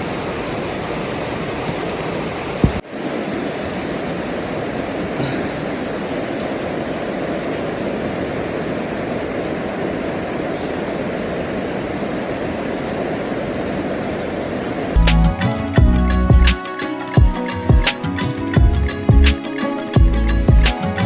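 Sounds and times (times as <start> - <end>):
music: 15.0 - 21.0.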